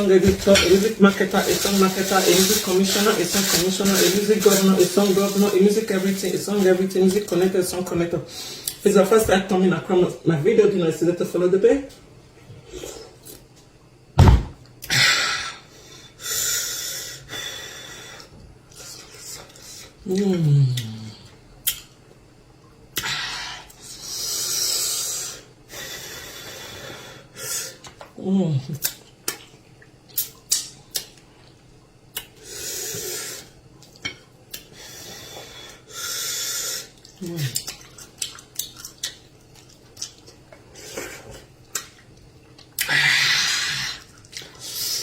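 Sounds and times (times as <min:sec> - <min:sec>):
breathy hissing mouth sounds: 0:34.7 - 0:36.9, 0:42.8 - 0:45.0.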